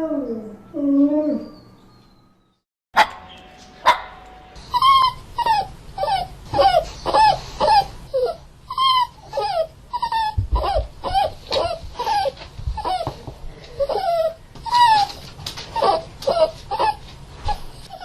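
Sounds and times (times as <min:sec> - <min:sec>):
dog yelping whimpers: 0:04.7 - 0:18.0.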